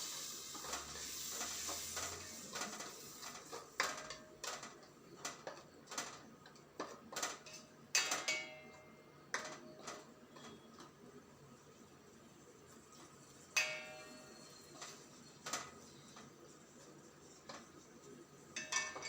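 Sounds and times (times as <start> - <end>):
utensil clinking against pan: 13.6 - 15.7, 18.6 - 19.0.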